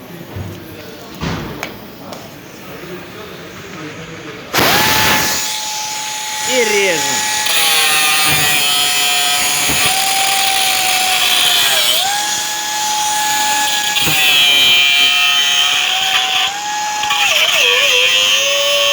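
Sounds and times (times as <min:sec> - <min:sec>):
angle grinder cutting metal: 0:04.5 - 0:18.9.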